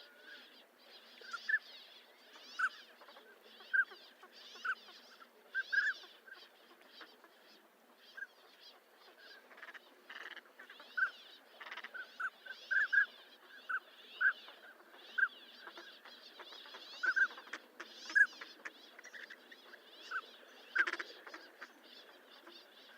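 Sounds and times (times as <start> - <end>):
ducks whistling calls: 2.3 - 7.4, 8.1 - 22.9.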